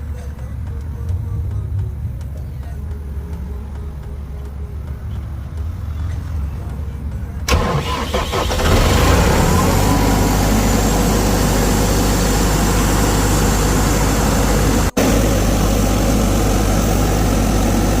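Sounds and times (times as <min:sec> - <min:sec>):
diesel air compressor engine running: 0:07.5 - 0:18.0.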